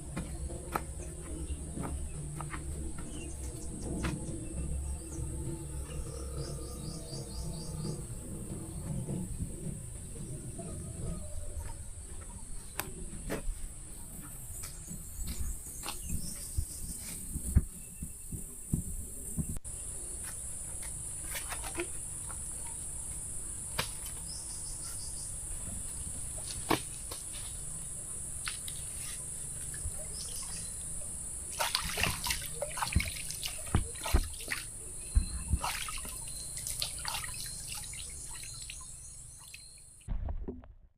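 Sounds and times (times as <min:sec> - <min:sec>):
forest insects droning: 0:00.0 - 0:40.1.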